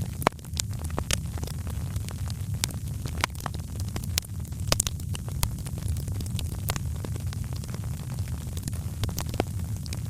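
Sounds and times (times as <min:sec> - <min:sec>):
low rumble of burning fire: 0:00.0 - 0:10.0
wood fire crackling and popping: 0:00.0 - 0:10.0.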